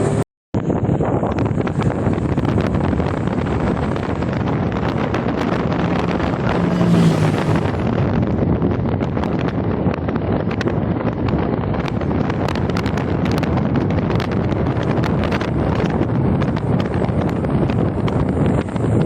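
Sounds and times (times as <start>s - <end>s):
low hum: 0.0s - 8.9s
steady rumbling: 0.0s - 19.0s
wind buffeting microphone: 0.0s - 19.0s.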